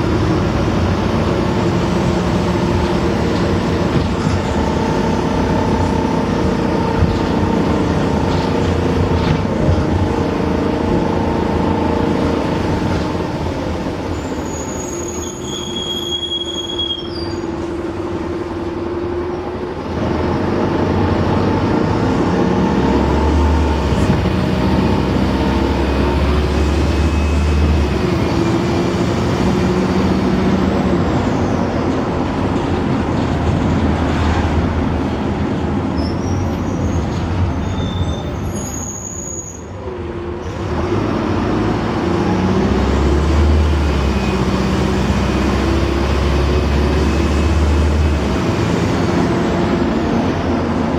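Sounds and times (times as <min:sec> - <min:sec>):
bus diesel engine whine: 0:00.0 - 0:50.9
turbo whistle: 0:14.4 - 0:17.4.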